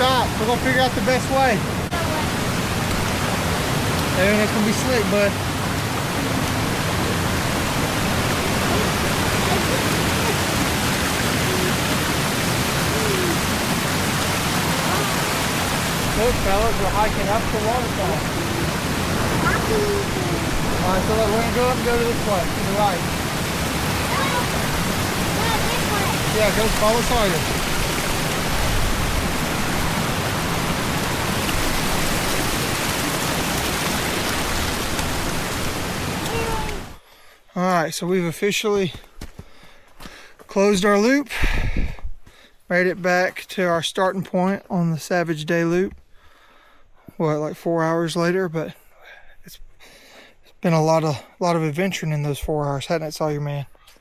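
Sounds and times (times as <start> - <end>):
waterfall rushing: 0.0 - 37.0.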